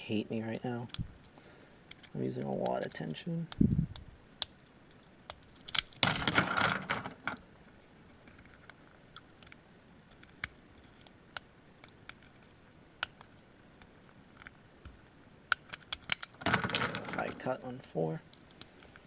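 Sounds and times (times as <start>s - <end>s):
lock picks clicking: 0.4s - 2.5s, 5.3s - 7.0s, 15.5s - 16.9s.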